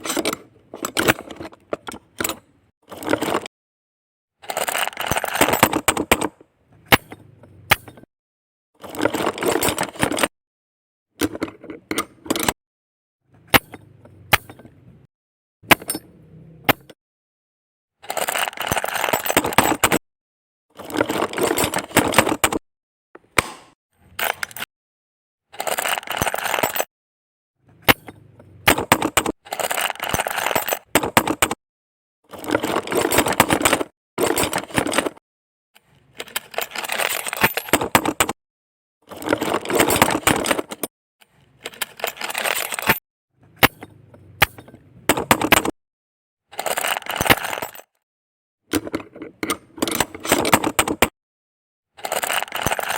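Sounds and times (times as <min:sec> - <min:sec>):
plastic bricks clattering: 0:25.6 - 0:26.9, 0:27.8 - 0:31.6, 0:41.5 - 0:43.0, 0:46.6 - 0:47.9, 0:52.0 - 0:52.9.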